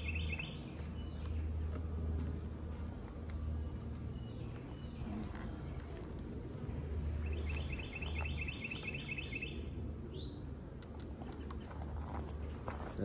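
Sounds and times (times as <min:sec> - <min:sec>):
songbird trilling: 0:00.0 - 0:01.4, 0:07.2 - 0:10.4
low steady hum: 0:00.0 - 0:13.0
short rising bird chirp: 0:07.2 - 0:10.4.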